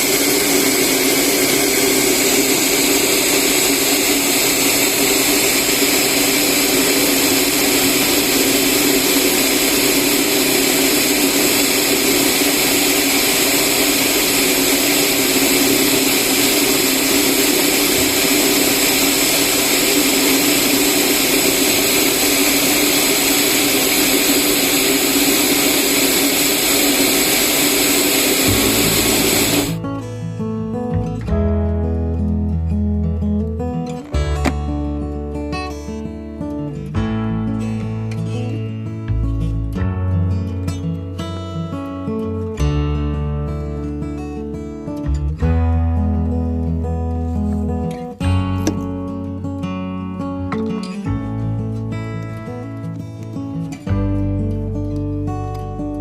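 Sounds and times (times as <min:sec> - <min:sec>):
rice polishing machine motor hum: 0:00.0 - 0:29.8.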